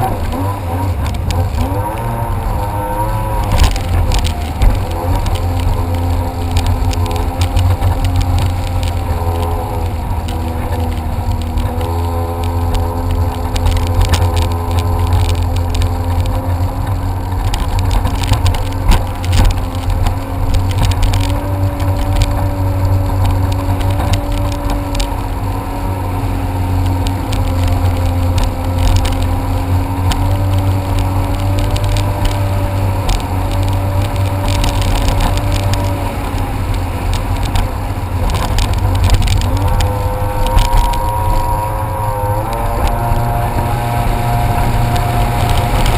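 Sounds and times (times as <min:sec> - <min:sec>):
jet ski engine running: 0:00.0 - 0:45.9.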